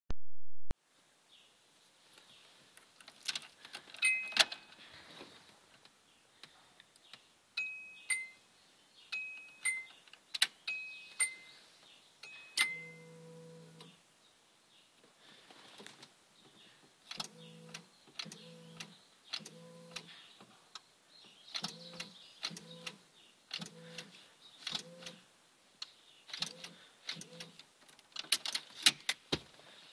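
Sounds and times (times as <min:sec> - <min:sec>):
sharp clicks: 0:17.1 - 0:20.1, 0:21.5 - 0:25.2, 0:25.8 - 0:29.2.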